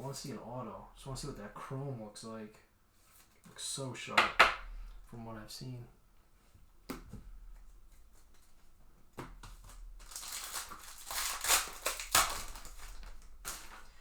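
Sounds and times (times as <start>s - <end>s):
wrapper tearing and crinkling: 9.6s - 14.0s.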